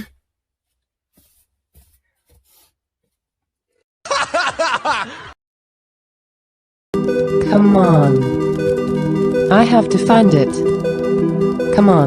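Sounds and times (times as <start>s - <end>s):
burst of laughter: 4.1s - 5.4s.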